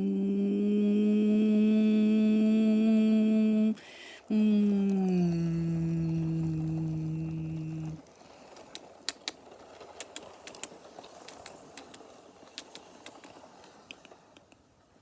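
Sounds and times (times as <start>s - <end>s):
steady low hum: 0.0s - 8.2s
faint hiss: 0.0s - 15.0s
sharp clicks and crackles: 6.4s - 14.7s.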